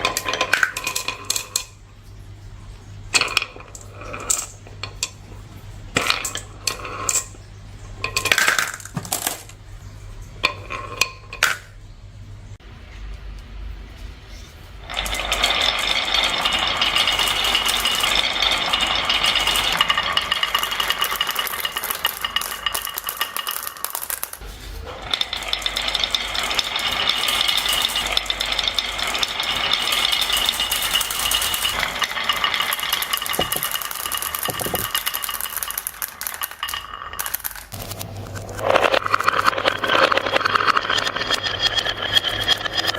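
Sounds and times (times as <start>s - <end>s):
marbles rattling down a track: 8.1s - 9.6s, 14.9s - 42.9s.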